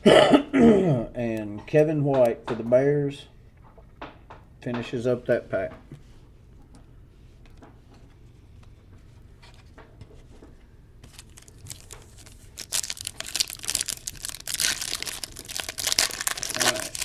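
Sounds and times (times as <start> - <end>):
card wrapper tearing and crinkling: 11.0 - 17.0.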